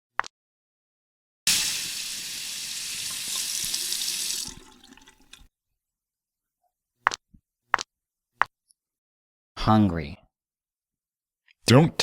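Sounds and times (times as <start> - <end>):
water running from a tap: 1.5 - 5.5.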